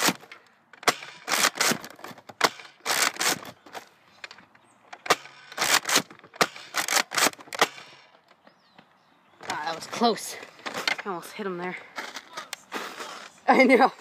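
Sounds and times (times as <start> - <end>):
toy dart blaster clacks and puffs: 0.0 - 3.6, 5.0 - 8.0.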